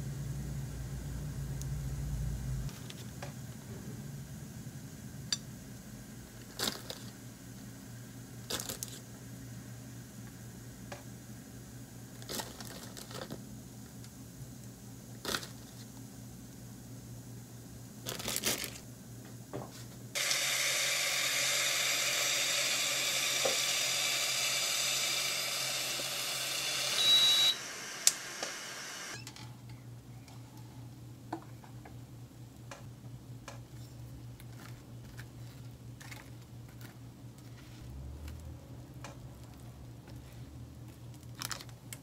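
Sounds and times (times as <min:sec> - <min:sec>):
low hum: 0:00.0 - 0:02.9
steady hiss: 0:20.1 - 0:29.2
short beep: 0:26.9 - 0:27.6.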